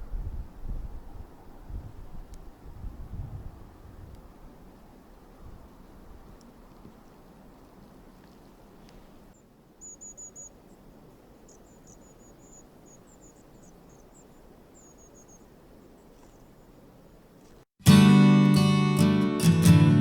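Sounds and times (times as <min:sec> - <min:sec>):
faint forest background: 0:00.0 - 0:20.0
small songbird high thin calls: 0:05.8 - 0:17.4.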